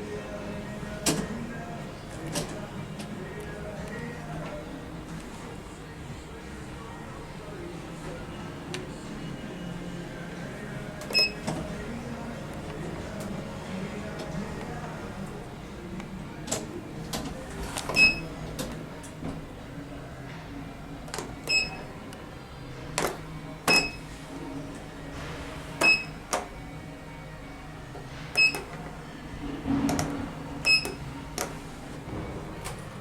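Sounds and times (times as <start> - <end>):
short electronic beeps: 23.7 - 24.0.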